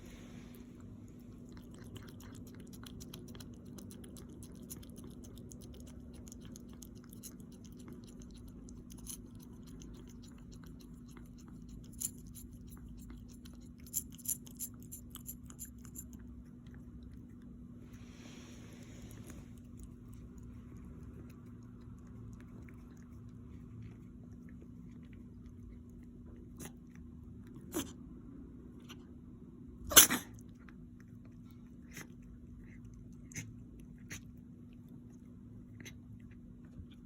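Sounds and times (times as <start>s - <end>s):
steady low hum: 0.0s - 37.0s
animal chewing food: 0.1s - 28.0s.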